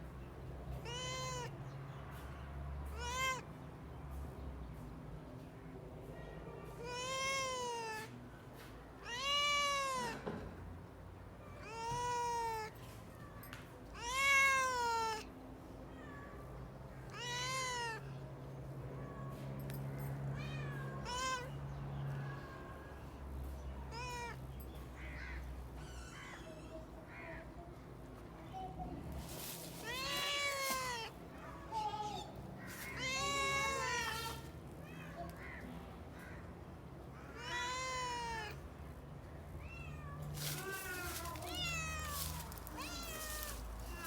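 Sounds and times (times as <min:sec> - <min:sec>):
cat meowing: 0:00.8 - 0:01.6, 0:02.9 - 0:03.4, 0:06.8 - 0:08.1, 0:09.0 - 0:10.2, 0:11.6 - 0:12.8, 0:14.0 - 0:15.3, 0:17.0 - 0:18.2, 0:20.3 - 0:21.6, 0:23.9 - 0:24.4, 0:29.8 - 0:35.6, 0:37.3 - 0:38.6, 0:39.6 - 0:44.0.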